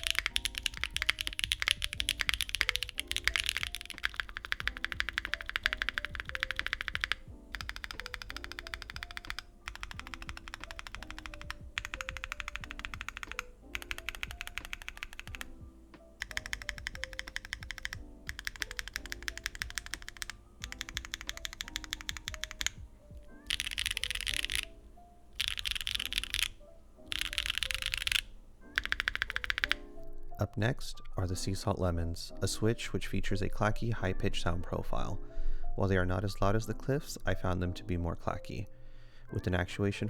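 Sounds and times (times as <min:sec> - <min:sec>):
fast typing on mechanical keyboard: 0:00.0 - 0:30.0
soft background music: 0:00.0 - 0:40.0.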